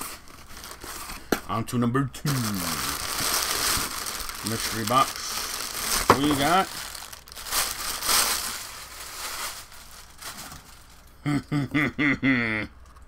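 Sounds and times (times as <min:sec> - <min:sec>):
packaging rustling and crinkling: 0:00.0 - 0:01.4, 0:02.2 - 0:11.2
man's voice: 0:04.4 - 0:05.4, 0:06.1 - 0:06.7.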